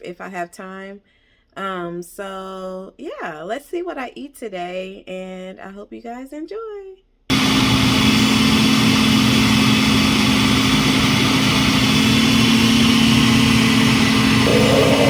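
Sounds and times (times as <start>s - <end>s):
blender running: 7.3s - 15.0s.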